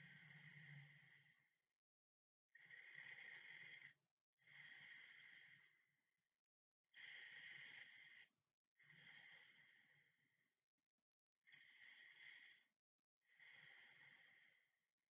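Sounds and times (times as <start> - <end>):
person breathing while sleeping: 0.0 - 1.5, 2.6 - 6.0, 6.9 - 10.4, 11.5 - 14.8.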